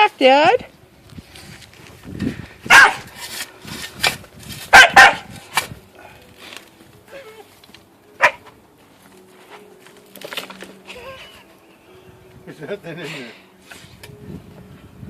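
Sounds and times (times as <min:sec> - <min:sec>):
dog barking: 0:02.7 - 0:03.1, 0:04.7 - 0:05.3, 0:08.2 - 0:08.4.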